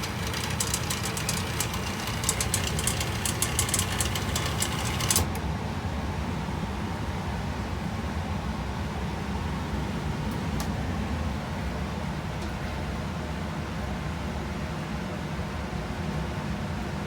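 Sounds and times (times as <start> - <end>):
machine humming: 0.0 - 5.4
rapid irregular ticking: 0.0 - 5.4.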